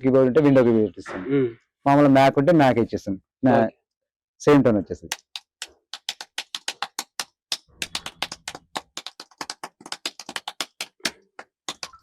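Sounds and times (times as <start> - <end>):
typing on computer keyboard: 5.1 - 12.0.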